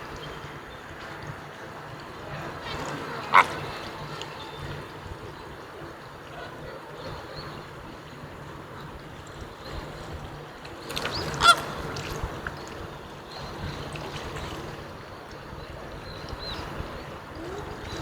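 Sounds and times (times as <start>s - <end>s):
flamingos honking: 2.1s - 5.4s, 11.4s - 11.8s.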